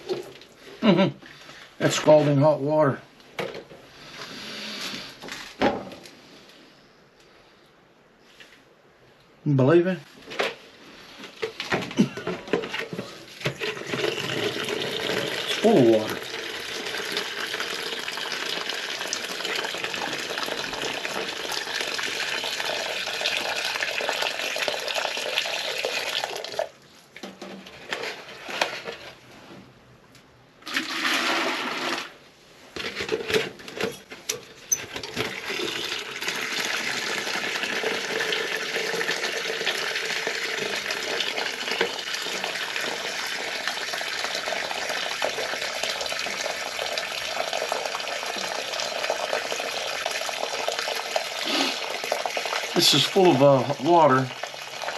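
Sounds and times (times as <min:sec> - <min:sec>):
hot water draining from pipes: 0:12.0 - 0:26.8, 0:30.6 - 0:32.1, 0:34.7 - 0:54.9.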